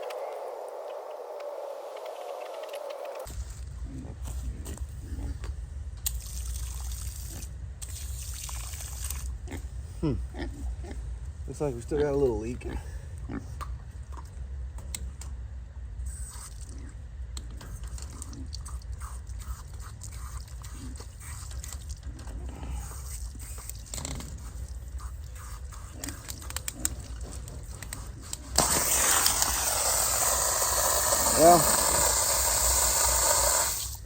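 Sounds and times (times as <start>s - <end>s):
pigs biting water nipple: 4.6s - 9.7s, 13.2s - 15.4s, 16.1s - 34.0s
water spraying hiss: 28.6s - 34.0s.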